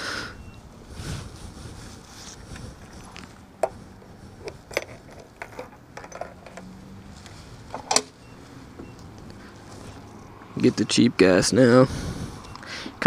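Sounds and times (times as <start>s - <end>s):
metallic clicks and clinks: 4.4s - 6.6s.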